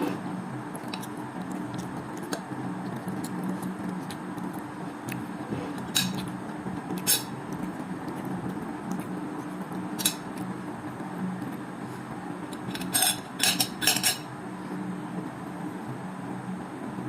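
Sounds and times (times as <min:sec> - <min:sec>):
cutlery and dishes clinking: 0:12.7 - 0:14.3.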